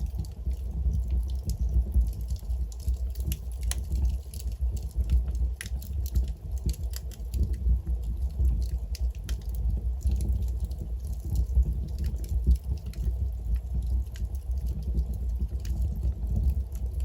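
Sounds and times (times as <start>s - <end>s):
fire crackling and popping: 0.0s - 17.0s
low rumble of flames: 0.0s - 17.0s.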